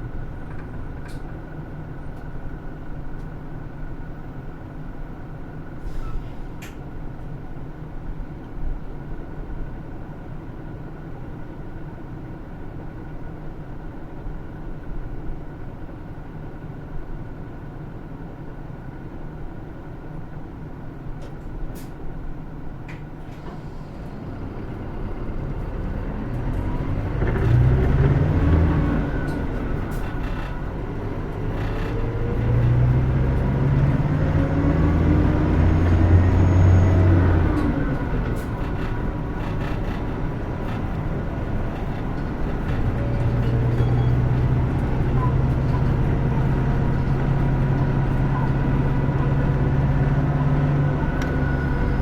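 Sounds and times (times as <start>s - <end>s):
bus diesel engine running: 0.0s - 52.0s
light rattles and clicks: 37.4s - 50.0s.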